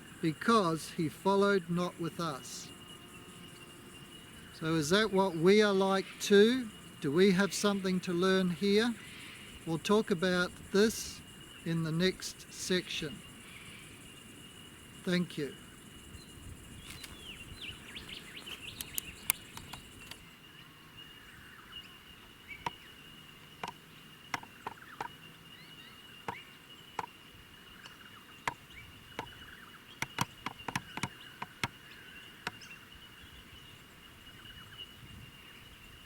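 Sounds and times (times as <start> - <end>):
soft bird chirps: 0.0 - 35.8
high insect trill: 0.0 - 36.0
insect buzz: 0.0 - 36.0
sharp clicks: 18.5 - 20.2, 23.6 - 25.1, 30.0 - 31.7.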